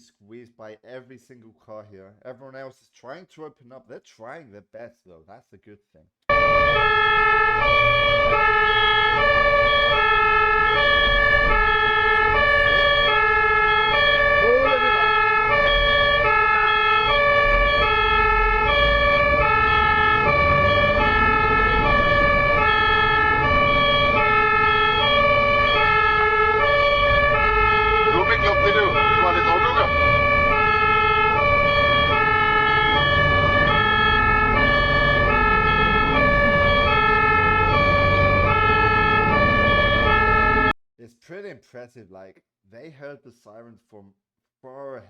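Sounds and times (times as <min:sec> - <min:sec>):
two-tone ambulance siren: 0:06.3 - 0:40.8
road rumble: 0:07.2 - 0:40.6.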